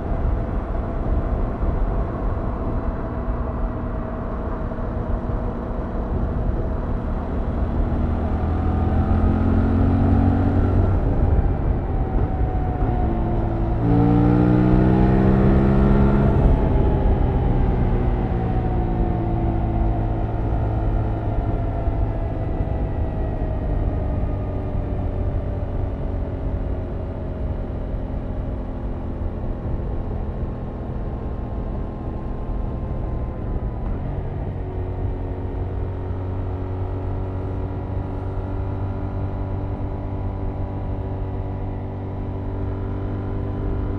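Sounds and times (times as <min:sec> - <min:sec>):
motorcycle engine revving: 0:07.1 - 0:17.6.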